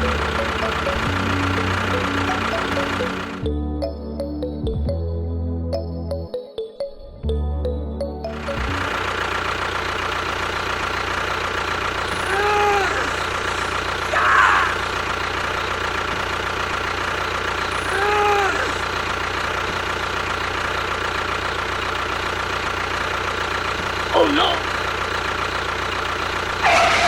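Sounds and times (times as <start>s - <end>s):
engine idling: 0.0s - 3.7s, 8.2s - 27.0s
rising and falling tones: 0.0s - 5.1s, 5.7s - 9.2s
brief noisy burst: 26.6s - 27.0s.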